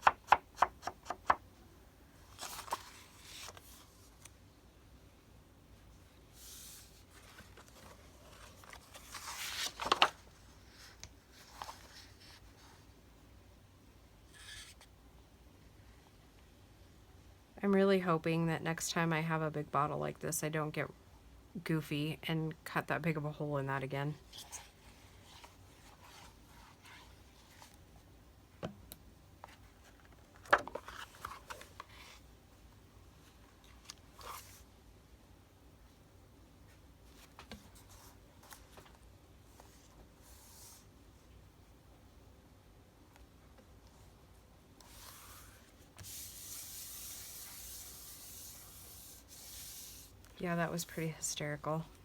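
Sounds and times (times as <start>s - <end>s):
paper rustling and sliding: 2.3s - 4.3s, 6.4s - 12.8s, 29.5s - 32.3s, 44.8s - 50.2s.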